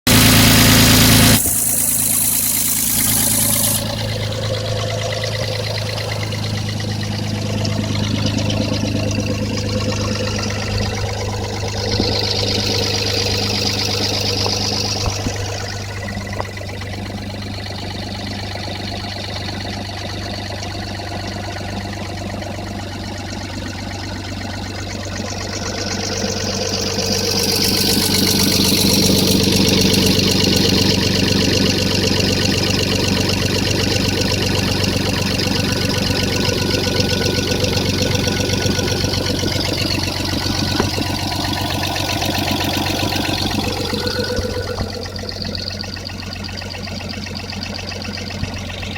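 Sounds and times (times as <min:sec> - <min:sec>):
car engine idling: 0:00.0 - 0:48.9
loud burst of noise: 0:00.1 - 0:18.0.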